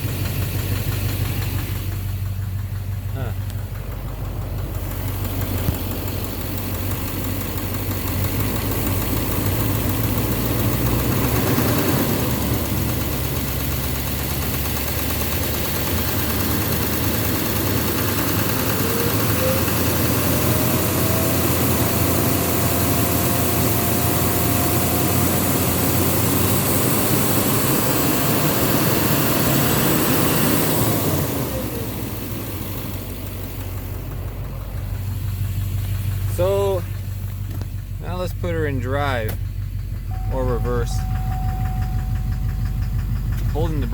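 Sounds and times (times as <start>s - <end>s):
diesel engine revving: 0.0s - 43.9s
turbo whistle: 40.1s - 43.0s.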